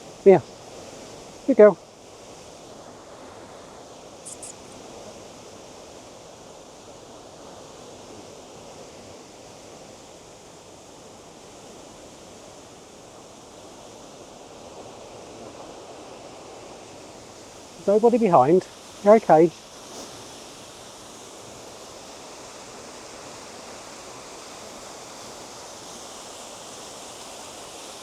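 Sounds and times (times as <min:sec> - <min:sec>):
short high chirps: 0:04.2 - 0:04.8
stream rushing over waterfalls: 0:12.0 - 0:28.0.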